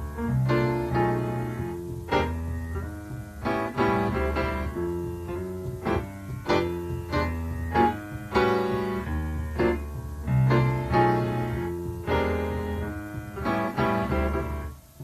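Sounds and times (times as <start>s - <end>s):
keyboard chords: 0.0s - 15.0s.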